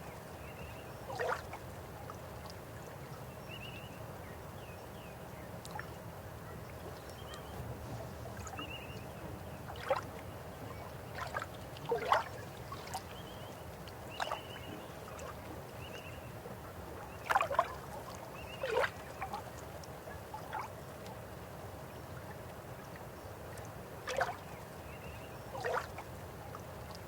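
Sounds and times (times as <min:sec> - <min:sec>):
water gurgles and plops: 0:11.0 - 0:15.6, 0:17.1 - 0:19.6, 0:24.1 - 0:24.5, 0:25.5 - 0:27.0.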